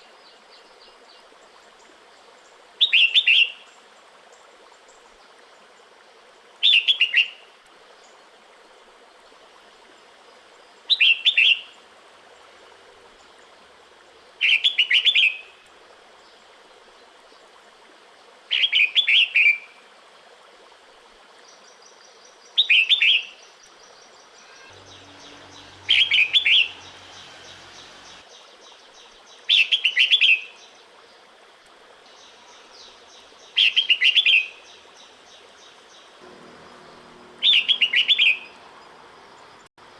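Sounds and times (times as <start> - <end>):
faint steady hiss: 0.0 - 39.9
bird chirpy call: 24.2 - 28.3, 36.4 - 39.7.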